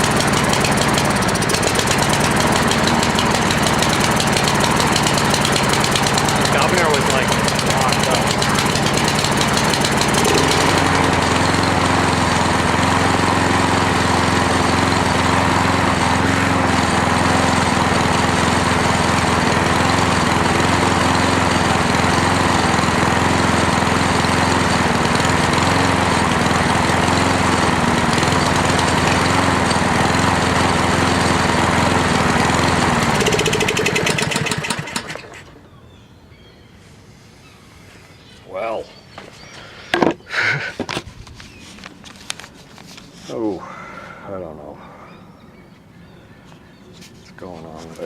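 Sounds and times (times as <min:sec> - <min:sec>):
lawn mower engine running: 0:00.0 - 0:35.8.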